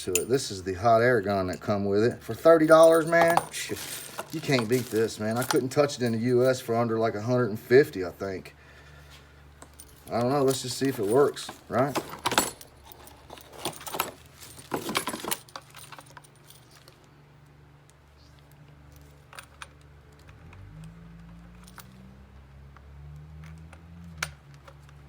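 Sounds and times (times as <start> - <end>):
metal parts clinking: 0.0 - 0.5, 1.5 - 6.9, 9.5 - 17.1
low steady hum: 0.0 - 20.3.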